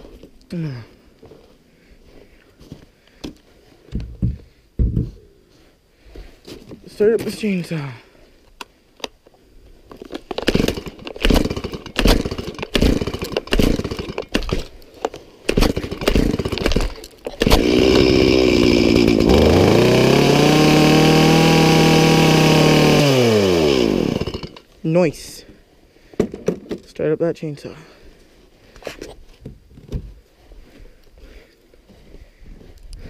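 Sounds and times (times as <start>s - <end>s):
starter cord pulls: 10.3s - 14.7s, 15.5s - 24.7s
chainsaw engine sputtering and revving: 10.4s - 14.6s, 15.5s - 24.7s.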